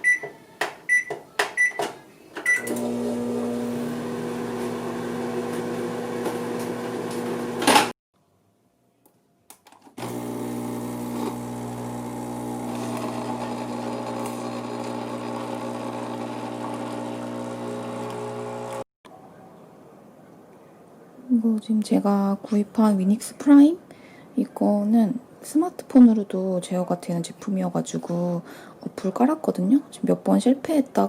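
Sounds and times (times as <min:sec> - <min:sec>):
appliance hum: 0:02.5 - 0:07.9, 0:10.0 - 0:18.8
microwave oven humming: 0:02.6 - 0:07.7, 0:10.0 - 0:18.8.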